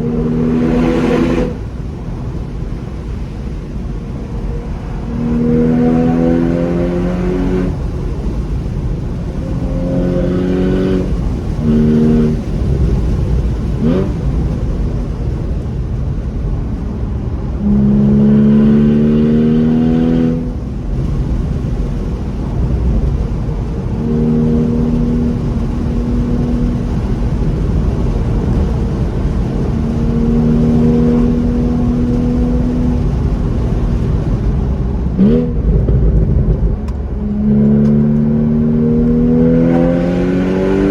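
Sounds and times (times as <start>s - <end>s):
rising whine: 0.0s - 7.9s, 17.1s - 20.6s, 34.0s - 40.9s
car engine accelerating through gears: 0.0s - 40.9s.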